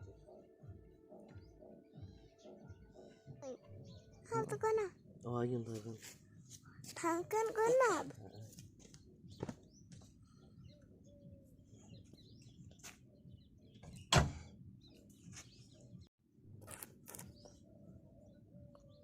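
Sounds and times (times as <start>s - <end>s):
faint bird chirps: 0.0s - 8.6s.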